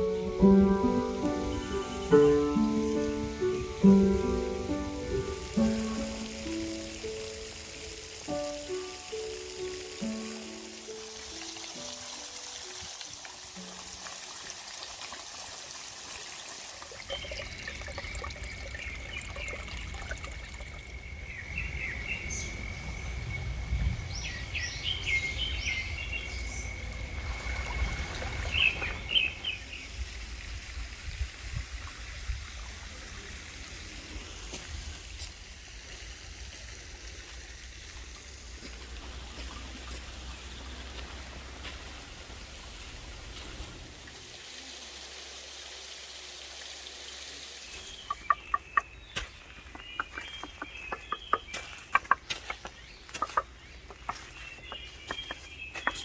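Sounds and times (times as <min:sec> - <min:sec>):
birds chirping: 0:00.0 - 0:07.2, 0:17.0 - 0:29.9, 0:47.6 - 0:56.0
water trickling: 0:00.0 - 0:23.2, 0:24.2 - 0:56.0.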